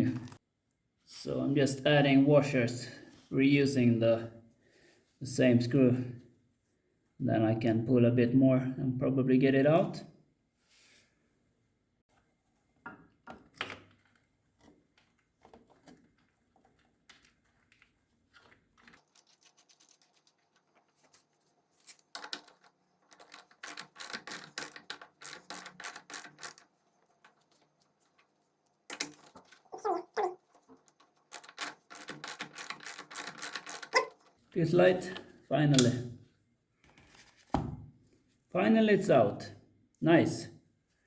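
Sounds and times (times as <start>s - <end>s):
rubber bushing squealing: 33.8s - 34.2s.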